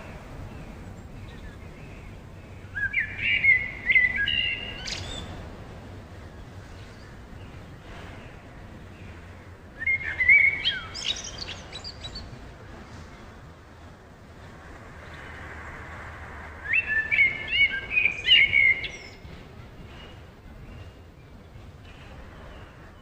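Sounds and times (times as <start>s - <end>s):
steady background noise: 0.0s - 23.0s
bird chirps and whistles: 9.8s - 12.0s, 16.6s - 19.2s.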